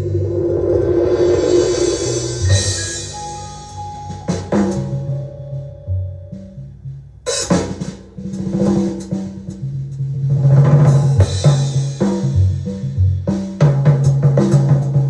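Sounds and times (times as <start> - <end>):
double bass line: 0.0 - 7.3
jazz drum kit: 0.0 - 15.0.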